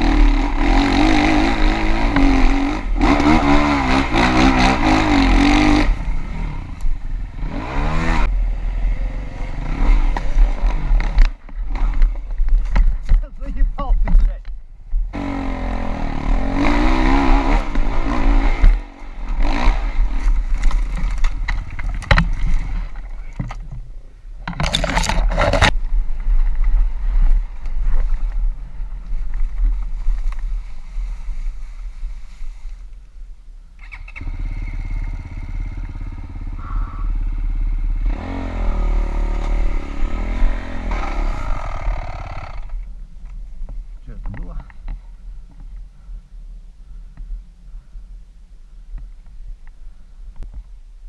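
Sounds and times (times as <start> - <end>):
motorcycle engine revving: 0.0 - 12.3, 15.1 - 23.0, 33.8 - 42.9.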